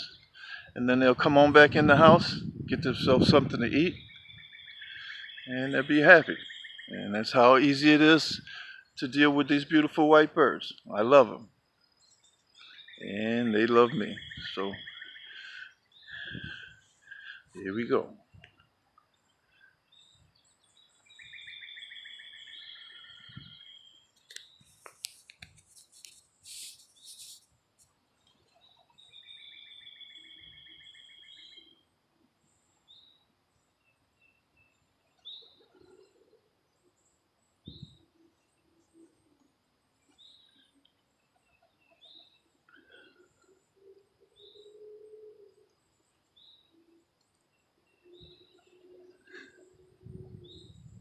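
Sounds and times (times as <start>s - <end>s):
songbird trill: 0.0s - 51.0s
bird chirping: 2.5s - 27.5s, 28.1s - 51.0s
bird twittering: 3.8s - 7.4s, 12.0s - 18.4s, 19.4s - 24.9s, 28.5s - 31.8s, 41.5s - 51.0s
high bird chirps: 47.6s - 51.0s.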